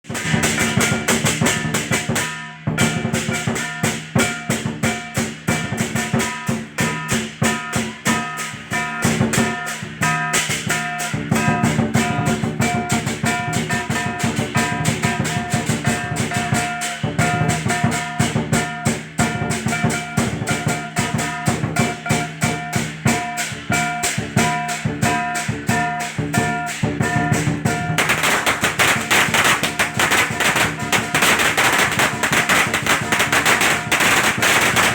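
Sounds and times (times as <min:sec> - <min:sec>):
big drum beating fast: 0:00.0 - 0:34.9
clashing cymbals: 0:00.1 - 0:34.9
firecrackers crackling: 0:27.9 - 0:34.9.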